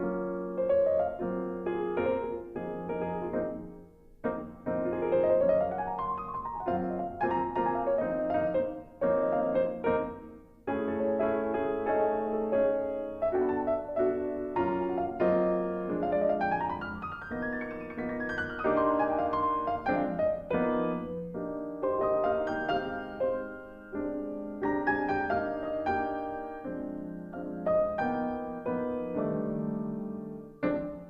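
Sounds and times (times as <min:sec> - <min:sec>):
solo piano music: 0:00.0 - 0:31.0.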